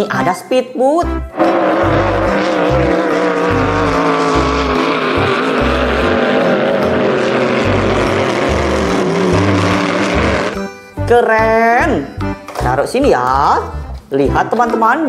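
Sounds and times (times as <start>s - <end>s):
background music with bass line: 1.0s - 14.6s
motorboat engine running: 1.4s - 10.7s.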